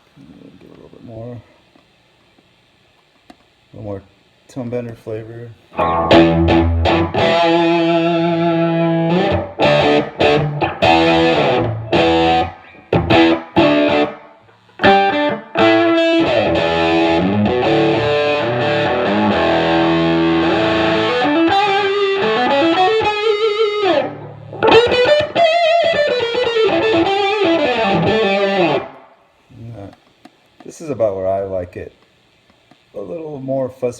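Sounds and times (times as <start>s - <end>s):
fuzz distorted electric guitar: 5.7s - 29.2s.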